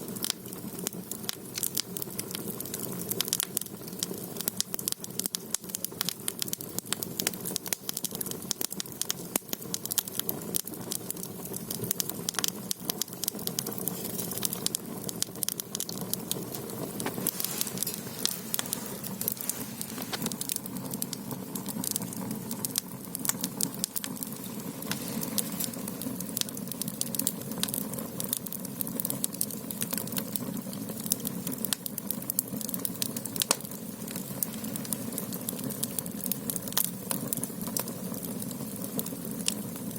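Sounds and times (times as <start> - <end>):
firewood crackling and popping: 0.0 - 39.9
rush of flames: 11.1 - 28.3, 32.5 - 37.4.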